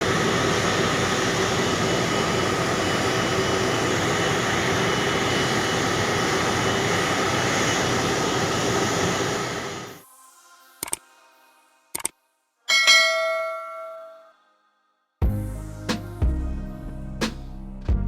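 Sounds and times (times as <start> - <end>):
jet aircraft engine whine: 0.0 - 10.0.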